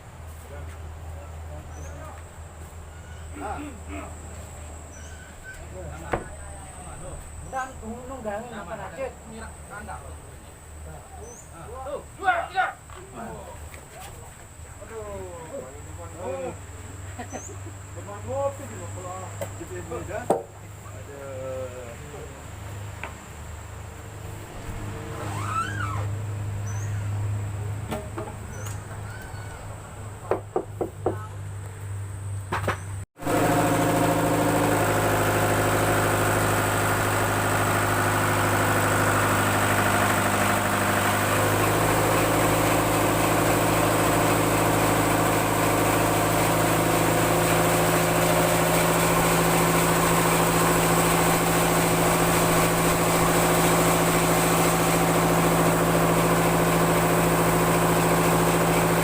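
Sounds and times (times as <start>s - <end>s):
sharp knocks: 30.3s - 31.2s
sawmill engine running: 33.2s - 59.0s.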